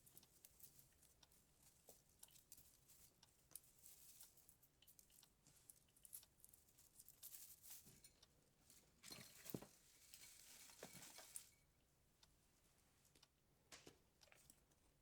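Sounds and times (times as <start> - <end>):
decorations rustling and crinkling: 0.0 - 11.9, 12.6 - 14.8.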